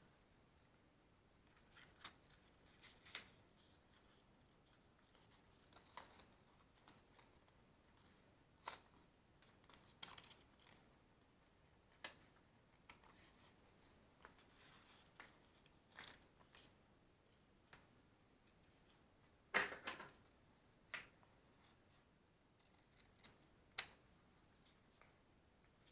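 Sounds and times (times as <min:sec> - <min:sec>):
clicks and scrapes of small objects: 0:01.4 - 0:10.9, 0:22.6 - 0:24.0.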